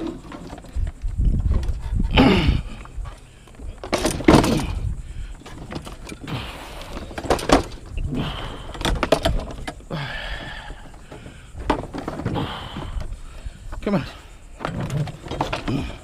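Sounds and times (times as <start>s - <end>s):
scrap metal clanking and scraping: 3.7s - 4.8s, 14.4s - 16.0s.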